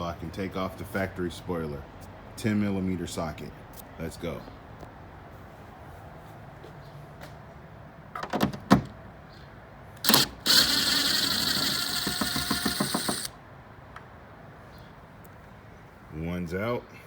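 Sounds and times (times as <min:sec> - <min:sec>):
ratchet wrench clicking: 0:10.0 - 0:13.3.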